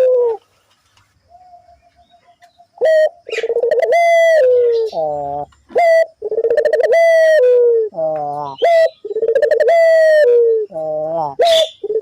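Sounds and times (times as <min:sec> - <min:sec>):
dove cooing: 0:00.0 - 0:00.5, 0:01.3 - 0:12.0.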